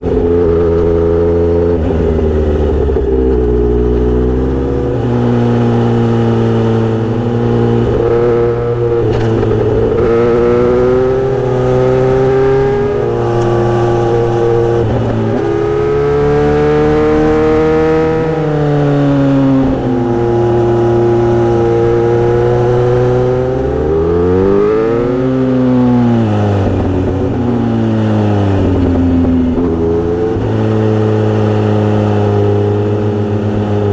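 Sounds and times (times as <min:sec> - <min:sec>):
motorcycle engine revving: 0:00.0 - 0:33.9.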